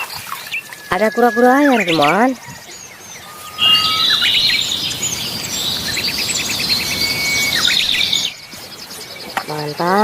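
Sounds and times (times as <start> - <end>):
birds chirping and trilling: 0.0 - 10.0
steady rushing noise: 3.1 - 8.9.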